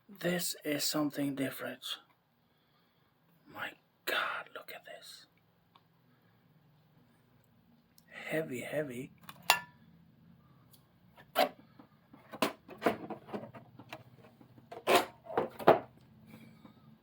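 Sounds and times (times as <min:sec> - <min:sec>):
rustles and knocks: 0:11.3 - 0:16.0.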